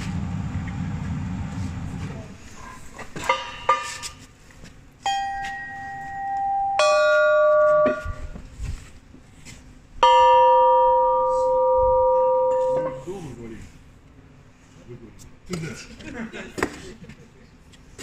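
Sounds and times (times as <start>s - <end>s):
bells struck: 5.0s - 8.3s, 10.0s - 13.1s.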